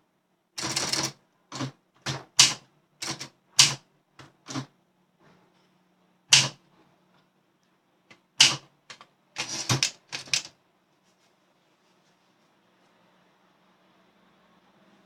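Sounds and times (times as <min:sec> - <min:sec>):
manual typewriter keystrokes: 0:00.6 - 0:03.8, 0:06.3 - 0:06.6, 0:08.1 - 0:10.5.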